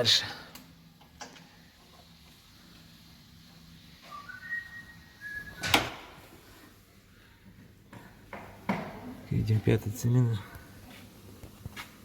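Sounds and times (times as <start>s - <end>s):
person whistling: 4.1s - 5.7s.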